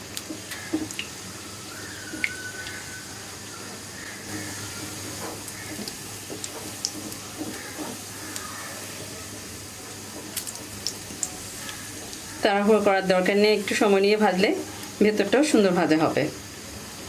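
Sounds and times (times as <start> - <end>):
flatbread sizzling in oil: 0.0 - 17.0
small pops and crackles: 0.1 - 1.1, 5.2 - 8.5, 10.1 - 12.3.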